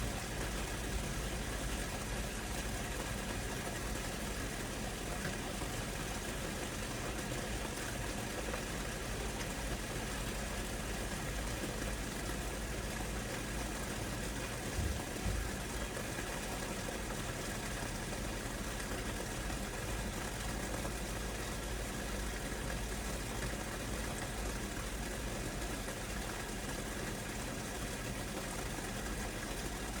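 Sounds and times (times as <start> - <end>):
steady rain falling: 6.6 - 26.7.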